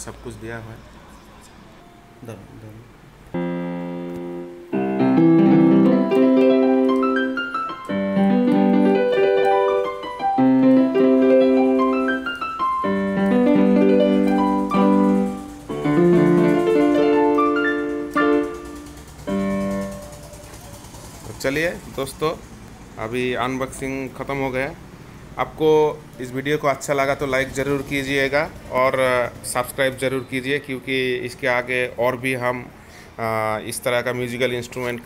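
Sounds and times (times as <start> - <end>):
keyboard playing piano melody: 1.6 - 22.5.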